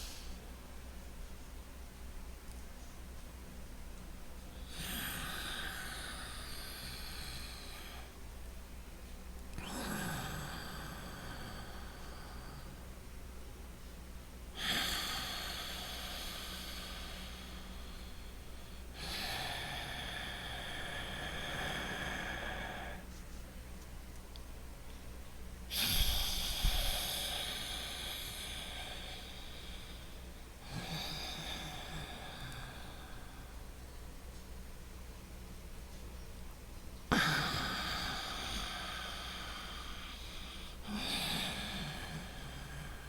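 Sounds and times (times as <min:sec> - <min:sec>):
loud breathing through nose: 0:00.0 - 0:00.4, 0:14.5 - 0:23.2, 0:25.7 - 0:33.7, 0:37.1 - 0:43.0.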